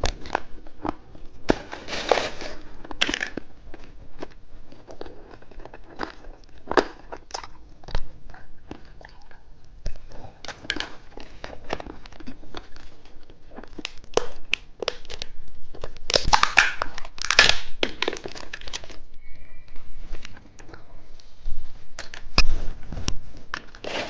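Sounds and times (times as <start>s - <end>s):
plastic wrapper crinkling: 10.5s - 20.9s.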